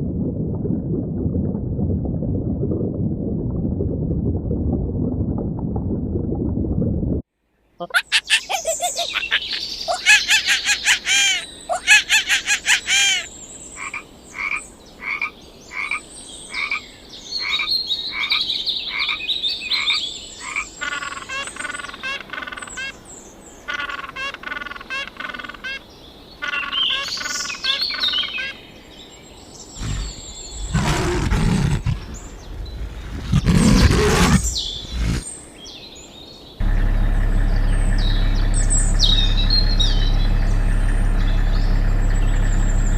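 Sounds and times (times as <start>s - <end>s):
frogs croaking and trilling: 7.8s - 25.8s
steady low hum: 36.6s - 42.9s.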